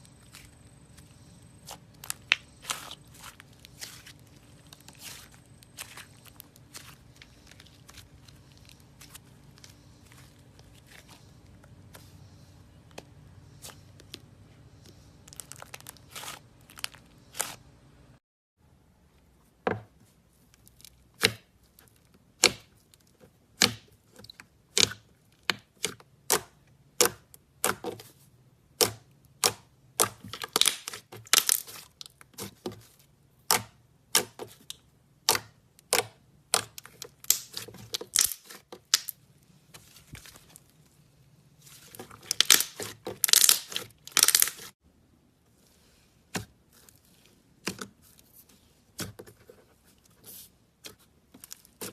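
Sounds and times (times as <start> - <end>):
slime popping and crackling: 15.3 - 17.6, 29.4 - 32.2, 35.2 - 39.2, 42.0 - 44.7.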